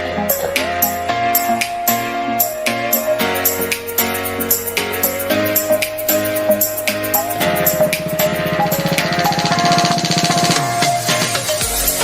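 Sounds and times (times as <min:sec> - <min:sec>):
gliding melody line: 0:00.0 - 0:11.6
music with steady beat: 0:00.0 - 0:12.0
bass line: 0:02.1 - 0:11.4.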